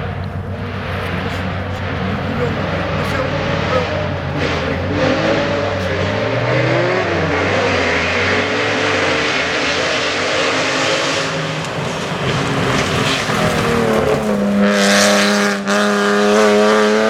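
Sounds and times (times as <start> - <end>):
rally car engine revving: 0.0 - 17.0
road and exhaust noise: 0.0 - 17.0.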